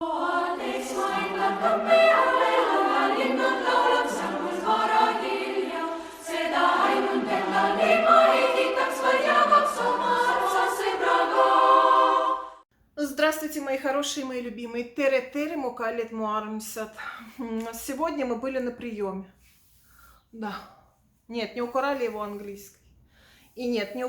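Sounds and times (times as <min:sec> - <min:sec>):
choir singing in harmony: 0:00.0 - 0:12.6.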